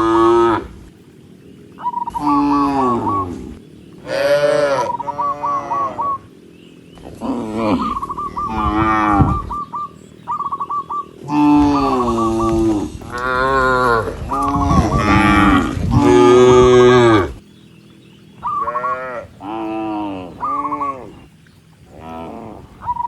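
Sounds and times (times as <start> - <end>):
cattle mooing: 0.0 - 0.8, 2.1 - 6.3, 7.0 - 9.6, 11.2 - 17.4, 18.4 - 21.3, 21.9 - 23.0.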